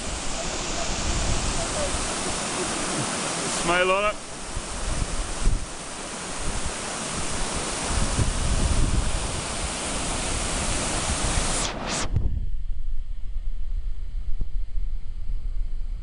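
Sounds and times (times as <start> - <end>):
low wind rumble on microphone: 0.0 - 2.1, 4.4 - 16.0
waterfall rushing: 0.0 - 12.0.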